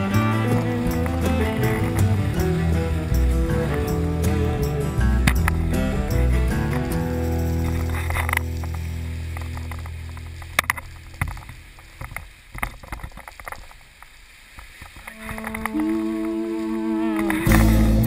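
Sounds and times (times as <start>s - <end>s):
song opening notes: 0.0s - 7.9s, 15.1s - 18.0s
faint clicks: 7.6s - 17.7s
low held music chord: 15.6s - 18.0s.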